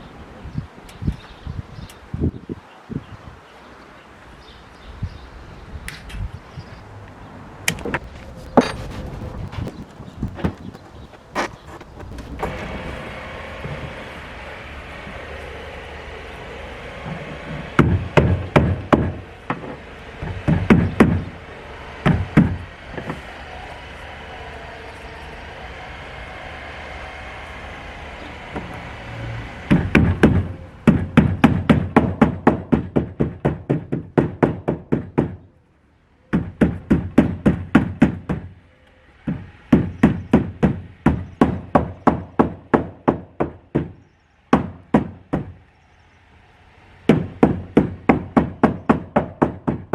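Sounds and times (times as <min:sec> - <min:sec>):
hammer blows: 0:07.7 - 0:15.2.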